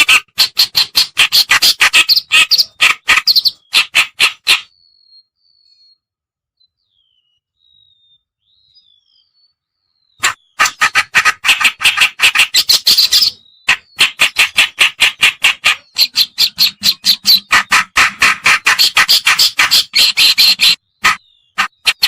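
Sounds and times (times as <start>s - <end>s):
bird harsh rapid chattering: 0.0s - 4.7s, 10.2s - 22.0s.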